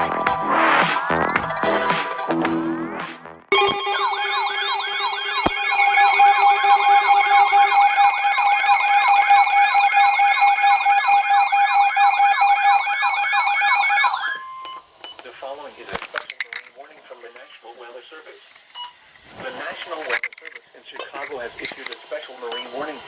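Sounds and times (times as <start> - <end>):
electronic siren warbling: 3.5 - 14.7
steady high tone: 3.5 - 14.7.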